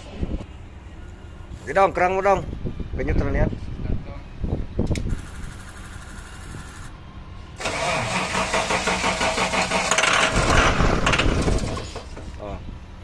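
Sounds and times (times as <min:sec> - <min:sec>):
starter cranking engine: 0:07.6 - 0:12.3
engine running loud and rough: 0:07.6 - 0:12.6.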